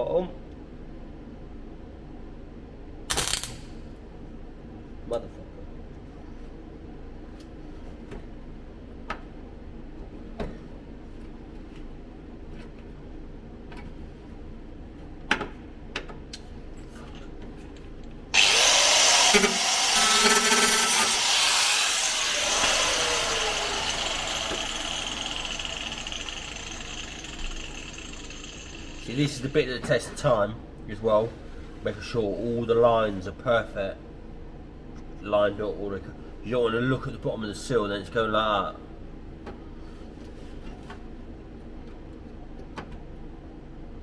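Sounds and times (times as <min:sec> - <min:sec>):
power tool whirring grind: 0:18.4 - 0:29.6.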